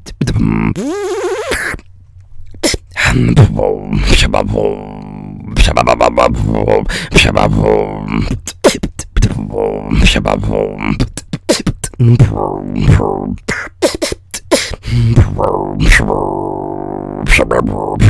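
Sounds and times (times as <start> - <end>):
beatboxing: 0.0 - 1.8, 7.5 - 18.0.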